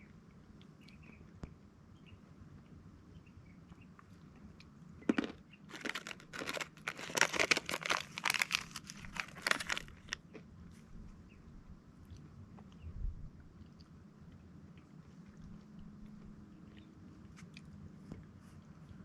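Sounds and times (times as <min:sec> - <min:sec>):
crinkling and crunching: 0:05.1 - 0:10.4.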